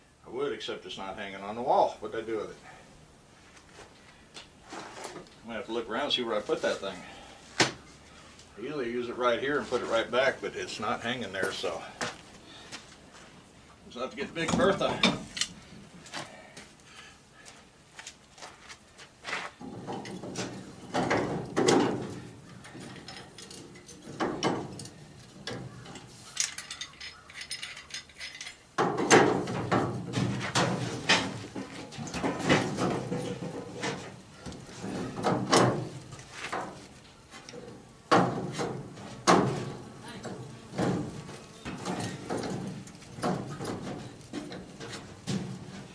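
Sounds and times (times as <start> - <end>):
metal tools clanking: 22.6 - 28.7.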